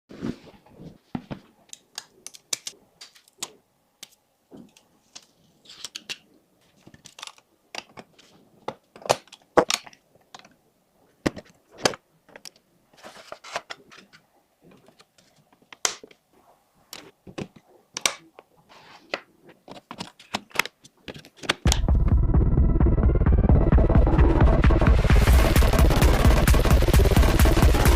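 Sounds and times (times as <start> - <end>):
computer parts clicking and tapping: 1.7 - 5.3
loud electronic music: 21.7 - 27.9.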